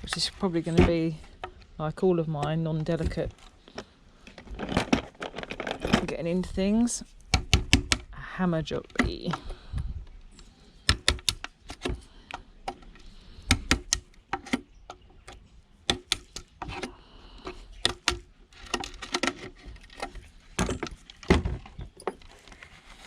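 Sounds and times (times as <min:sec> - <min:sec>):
hammer knocking on plastic casing: 0:07.3 - 0:08.0.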